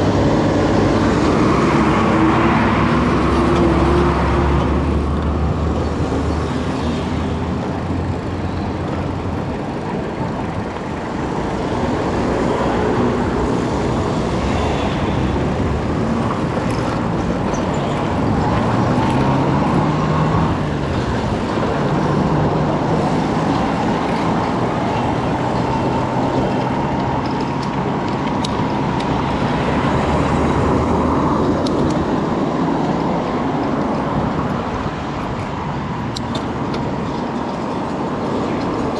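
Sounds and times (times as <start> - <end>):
road and tyre noise: 0.0 - 38.9
vehicle engine running: 5.0 - 19.3.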